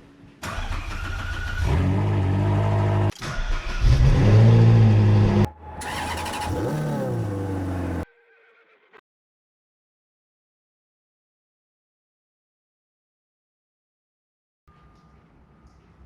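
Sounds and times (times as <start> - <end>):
sports car engine revving: 3.8 - 8.0.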